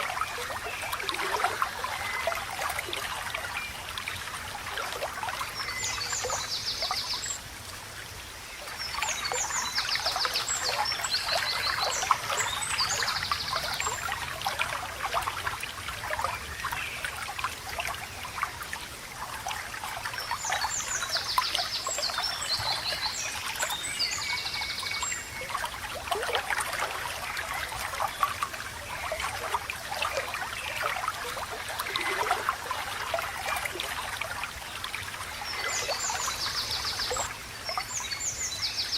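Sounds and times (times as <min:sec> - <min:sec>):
running water babbling: 0:00.0 - 0:38.9.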